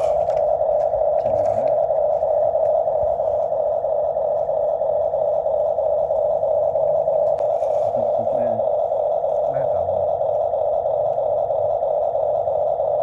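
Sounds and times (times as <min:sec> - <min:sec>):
small motor humming: 0:00.0 - 0:13.0.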